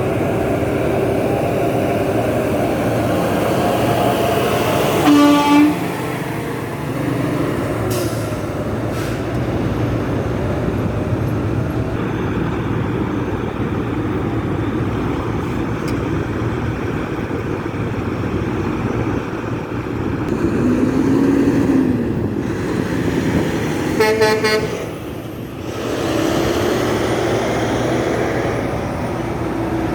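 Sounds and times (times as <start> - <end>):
engine rising in pitch: 0.0 - 17.5, 20.3 - 29.9
rumble of road traffic: 0.0 - 29.9.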